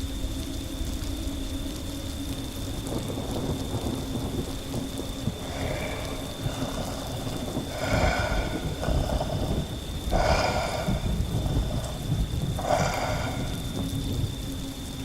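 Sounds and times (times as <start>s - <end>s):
rain falling: 0.0s - 15.0s
thunder rumble: 0.0s - 15.0s
breathy werewolf growls: 4.7s - 14.6s.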